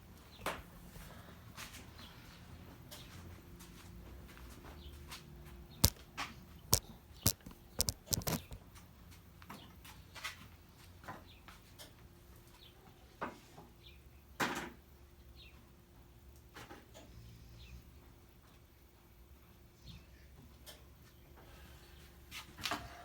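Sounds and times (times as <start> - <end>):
objects knocking and clattering: 5.8 - 6.0, 6.7 - 8.6
rattle: 6.7 - 8.6.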